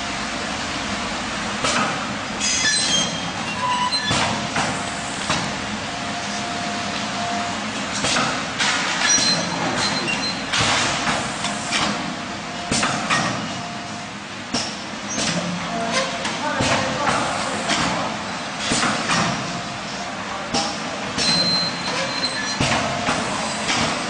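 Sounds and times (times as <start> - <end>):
machine clacks and knocks: 7.9 - 12.1, 20.5 - 24.0
packing machine hissing: 21.3 - 24.0.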